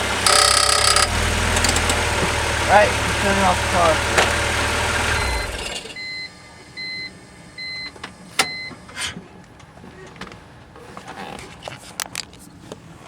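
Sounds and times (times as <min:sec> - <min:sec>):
car engine idling: 0:00.0 - 0:06.7.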